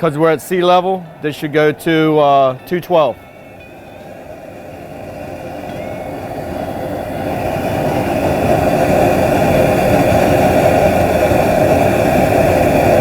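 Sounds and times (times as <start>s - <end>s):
water boiling in a pot: 4.2s - 13.0s.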